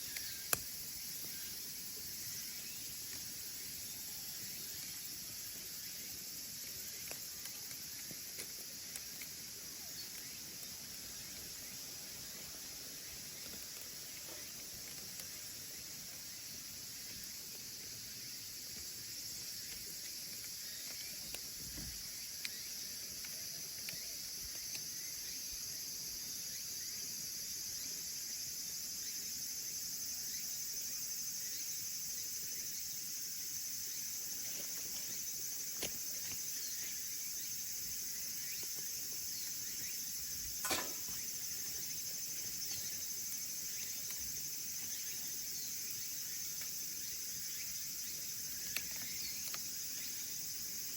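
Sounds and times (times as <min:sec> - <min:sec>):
firewood crackling in stove: 0:00.0 - 0:25.6, 0:34.1 - 0:50.9
steady high hiss: 0:00.0 - 0:50.9
sharp pops: 0:40.6 - 0:41.3.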